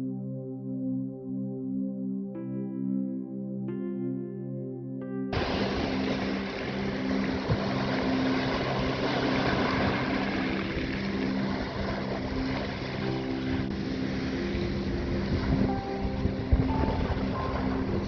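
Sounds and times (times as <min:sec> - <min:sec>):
low sustained tones: 0:05.4 - 0:18.0
waves: 0:05.4 - 0:18.0
wind buffeting microphone: 0:05.4 - 0:18.0.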